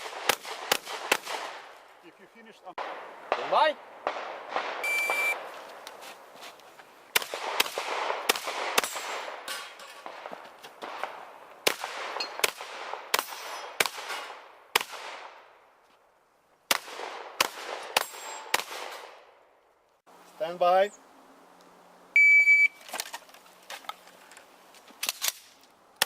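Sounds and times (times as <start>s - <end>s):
shotgun shots echoing: 0.0s - 1.8s, 2.8s - 5.5s, 7.1s - 15.5s, 16.7s - 19.3s.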